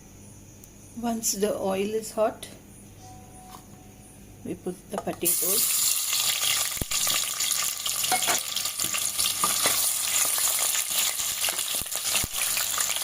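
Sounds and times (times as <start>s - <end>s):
potatoes sizzling in oil: 5.2s - 13.0s.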